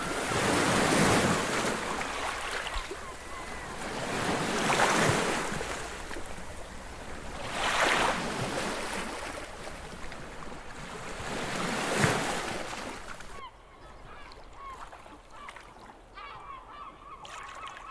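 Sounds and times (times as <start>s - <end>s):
honking bird calls: 0.0s - 5.8s
sea waves breaking: 0.0s - 13.4s.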